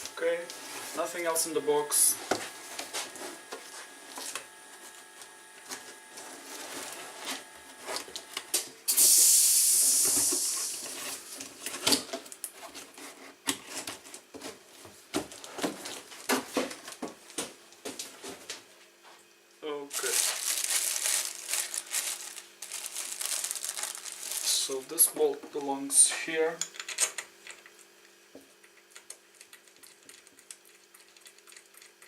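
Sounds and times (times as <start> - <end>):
plastic rustling: 19.9 - 25.0.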